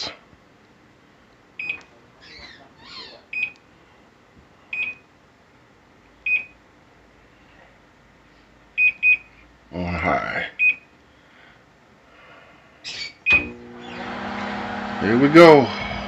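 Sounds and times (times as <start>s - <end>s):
microwave keypad beeps: 1.6s - 1.9s, 3.4s - 3.6s, 4.8s - 5.0s, 6.3s - 6.6s, 13.3s - 13.5s.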